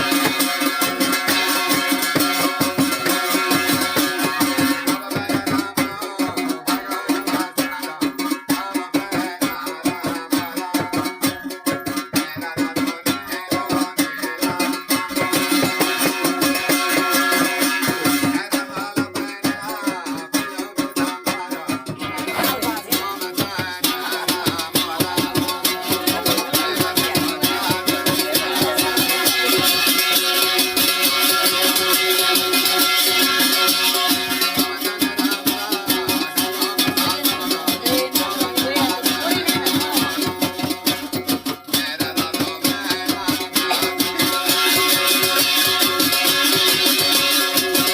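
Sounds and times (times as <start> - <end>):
fast percussion rhythm: 0.0 - 47.9
plucked string instruments: 13.2 - 47.9.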